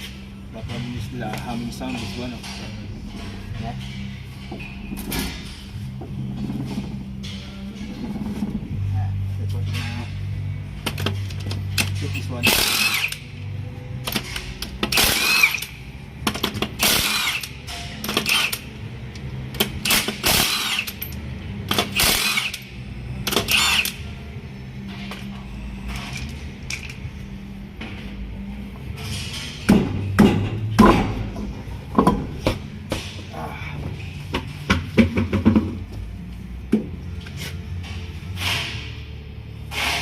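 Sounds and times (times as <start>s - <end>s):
steady low hum: 0.0s - 40.0s
metal knocks and clunks: 29.0s - 36.1s.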